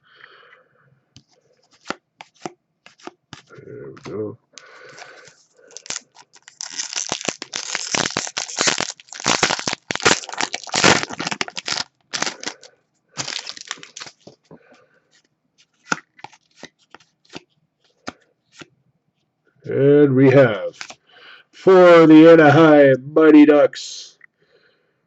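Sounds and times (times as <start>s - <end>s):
cards clicking and tapping: 1.2s - 7.4s, 15.7s - 18.7s, 20.7s - 21.0s
foil wrapper crinkling: 4.6s - 14.4s, 15.7s - 17.4s, 20.6s - 21.0s.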